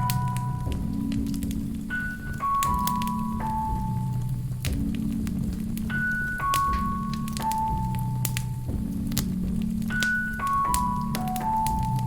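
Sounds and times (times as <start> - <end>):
slow gentle music: 0.0 - 12.0
wood fire crackling: 0.0 - 12.0.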